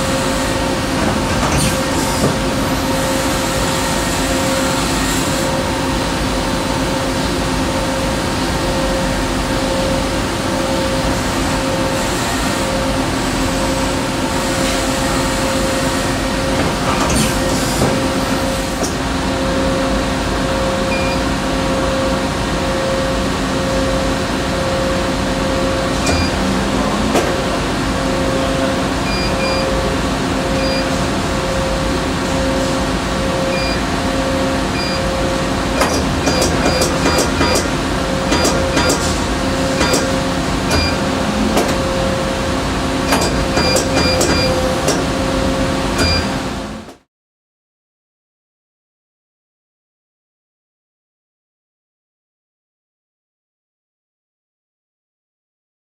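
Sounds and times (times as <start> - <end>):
lathe machine hum: 0.0 - 47.0
short high beeps: 26.1 - 26.4, 33.5 - 33.8.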